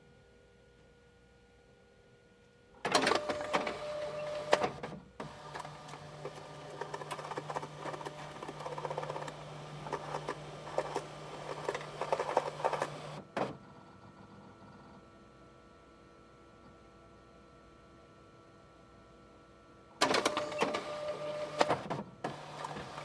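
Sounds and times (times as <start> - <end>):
fax machine clicks: 2.9 - 13.6, 20.0 - 23.0
fax steady tone: 2.9 - 13.6, 20.0 - 23.0.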